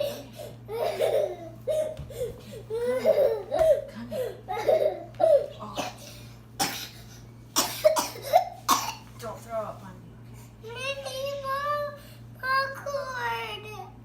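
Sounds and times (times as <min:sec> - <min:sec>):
child laughing: 0:00.0 - 0:01.9, 0:02.7 - 0:03.7
child coughing: 0:00.0 - 0:02.0, 0:02.8 - 0:03.8, 0:04.5 - 0:09.1.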